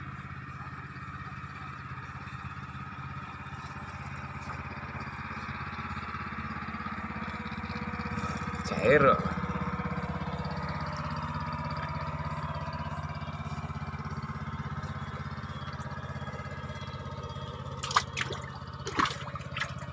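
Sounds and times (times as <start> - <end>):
pulsing low motor drone: 0.0 - 19.9
water splashes: 17.8 - 19.9.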